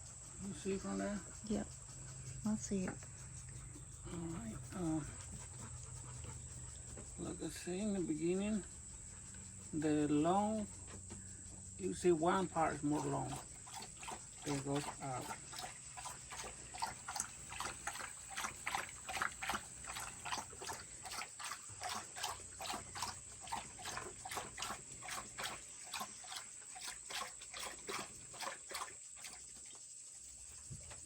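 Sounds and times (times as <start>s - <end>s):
dog panting: 0.0s - 11.8s.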